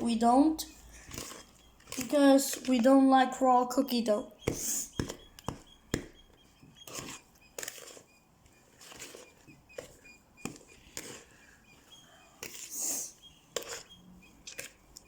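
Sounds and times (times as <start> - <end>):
spoon scraping cookie dough: 0.0 - 3.8, 4.4 - 15.0
faint high chirps: 4.1 - 15.0.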